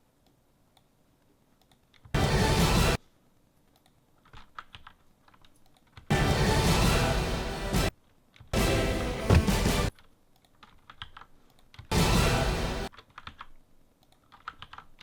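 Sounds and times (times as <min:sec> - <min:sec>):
keyboard and mouse clicks: 0:00.2 - 0:02.2, 0:03.4 - 0:06.1, 0:07.9 - 0:08.6, 0:09.9 - 0:11.9, 0:12.9 - 0:15.0.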